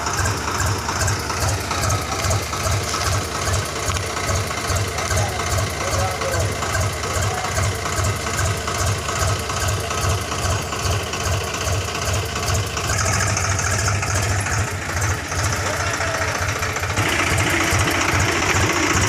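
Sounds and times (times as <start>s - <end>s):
chainsaw engine running: 0.0s - 19.0s.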